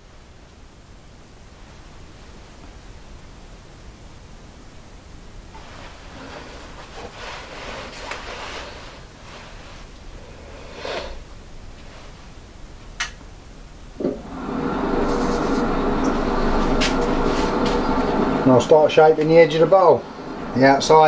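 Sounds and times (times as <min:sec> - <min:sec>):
rustling and scraping of handling: 0:05.5 - 0:11.0
lathe motor humming: 0:14.0 - 0:21.0.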